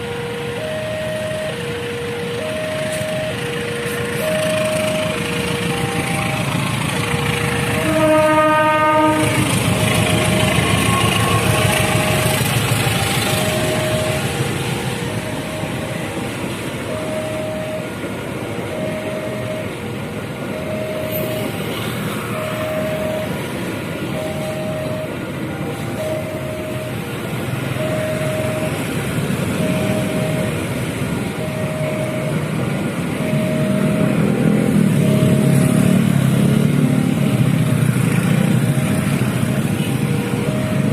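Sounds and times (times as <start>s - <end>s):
train rumbling and clattering: 0.0s - 0.6s, 1.2s - 40.9s
level crossing alarm beeping: 0.0s - 40.9s
train horn blast: 5.6s - 14.4s.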